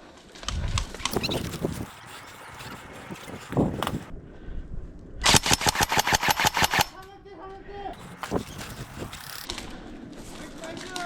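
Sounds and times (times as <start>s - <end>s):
clicks and rustling: 0.4s - 4.1s, 8.0s - 9.7s
airsoft gun full-auto burst: 5.2s - 7.0s.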